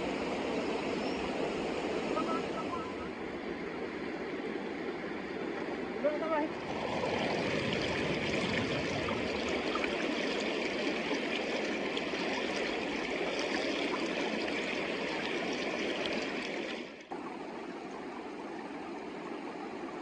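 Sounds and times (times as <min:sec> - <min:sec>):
river water rushing: 0:00.0 - 0:20.0.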